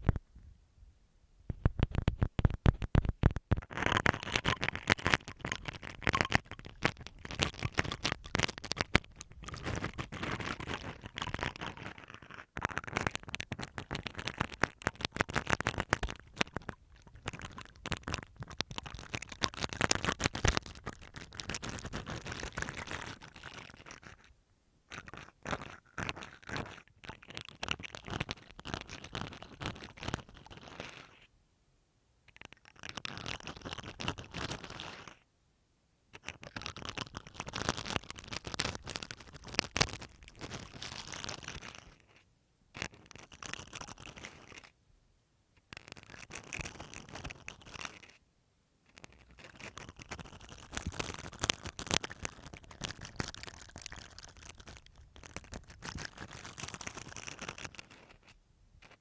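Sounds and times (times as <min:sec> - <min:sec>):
toothbrush scrubbing masking tape: 0:03.6 - 0:24.3, 0:42.8 - 0:44.7, 0:48.9 - 0:59.0.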